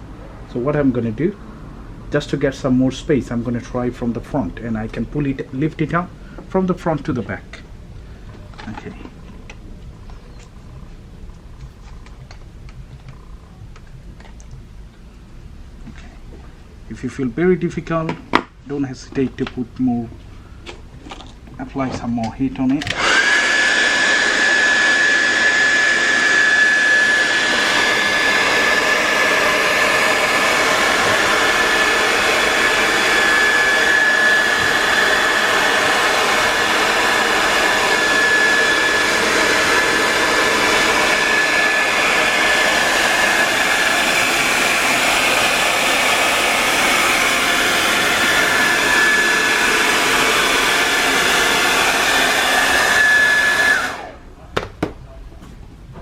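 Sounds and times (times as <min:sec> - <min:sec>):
hot-air blower running: 0:22.8 - 0:54.3.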